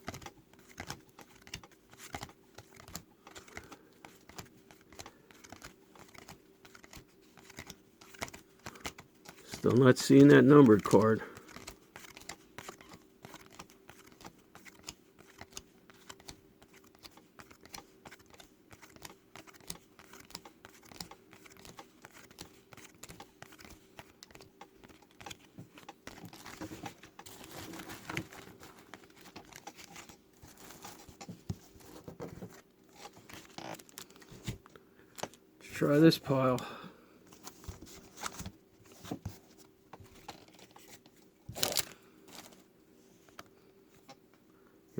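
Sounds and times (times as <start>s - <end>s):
cards flipped through by hand: 0.0s - 35.4s, 37.3s - 42.6s
faint steady hum: 0.0s - 44.9s.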